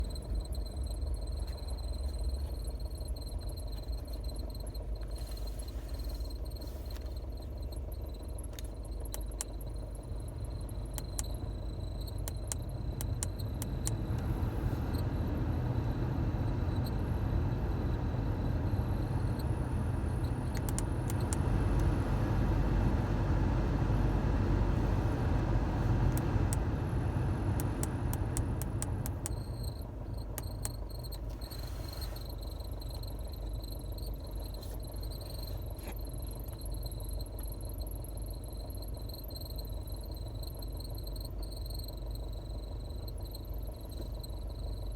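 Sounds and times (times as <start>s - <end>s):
light clicks: 20.4s - 21.9s.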